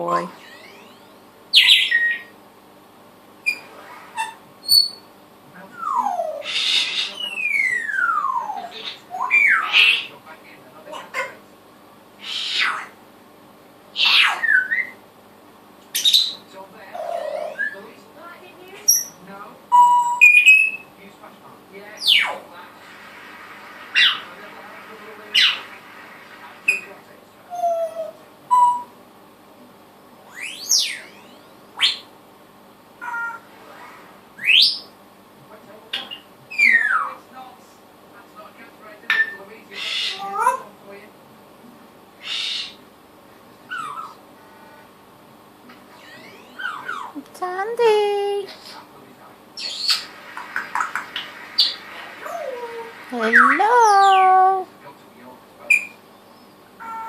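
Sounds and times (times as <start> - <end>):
parrot whistling and calling: 0.4 - 2.4, 3.4 - 5.1, 5.8 - 10.1, 12.2 - 13.0, 14.0 - 15.0, 16.0 - 16.4, 18.9 - 20.9, 27.5 - 29.0, 30.3 - 32.1, 34.4 - 34.9, 36.1 - 37.1, 42.2 - 42.8, 43.7 - 44.2, 45.9 - 47.2, 49.6 - 50.1, 55.7 - 56.0
bird squawk: 1.5 - 2.3, 3.4 - 5.1, 12.2 - 13.0, 14.0 - 15.0, 24.0 - 24.3, 25.3 - 25.8, 30.3 - 32.1, 33.0 - 34.9, 39.2 - 40.7, 42.2 - 42.8, 43.7 - 44.2, 45.9 - 47.2.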